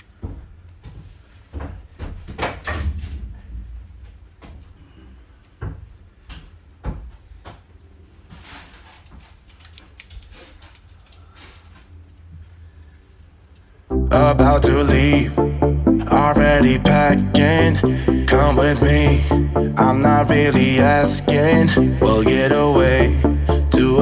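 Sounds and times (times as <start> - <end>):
low rumble: 13.9 - 24.0.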